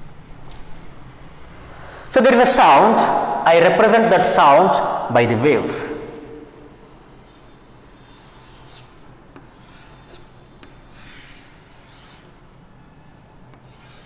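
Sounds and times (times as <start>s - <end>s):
chalk scratching on board: 7.8s - 12.5s, 13.5s - 14.0s.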